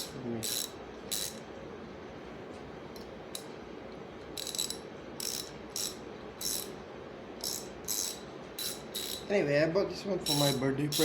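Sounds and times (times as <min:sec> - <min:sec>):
ratchet wrench clicking: 0:00.0 - 0:01.4, 0:04.4 - 0:06.7, 0:07.4 - 0:09.3, 0:10.2 - 0:11.0.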